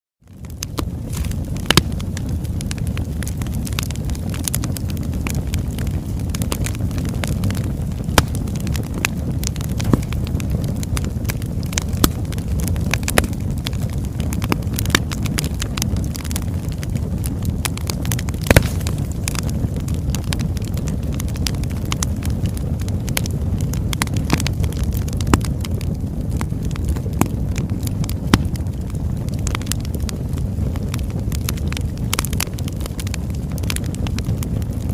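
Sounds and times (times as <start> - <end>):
logs crackling and popping: 0.2 - 34.9
low roar of flame: 0.2 - 34.9
sharp wood snaps: 0.7 - 2.0, 8.1 - 8.8, 9.5 - 10.4, 18.2 - 19.5, 28.3 - 28.6.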